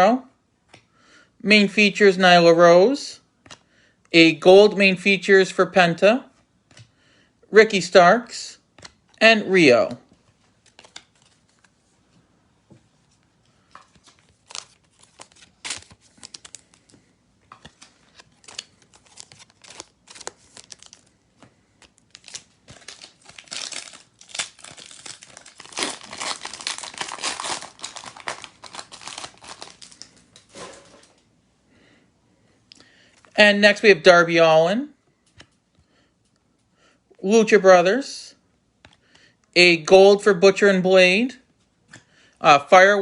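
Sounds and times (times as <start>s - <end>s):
wrapper tearing and crinkling: 14.0s - 16.8s, 18.1s - 21.1s, 21.8s - 31.1s.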